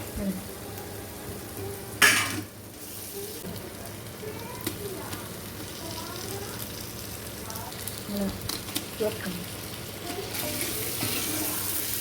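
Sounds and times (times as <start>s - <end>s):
food sizzling in a pot: 0.0s - 12.0s
stirring in a pot: 2.8s - 12.0s.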